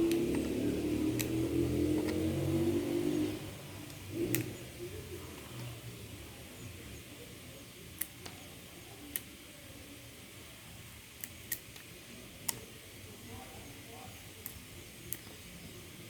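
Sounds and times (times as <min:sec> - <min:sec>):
sharp clicks: 0:00.0 - 0:02.2, 0:03.8 - 0:04.6
engine running: 0:00.0 - 0:05.9.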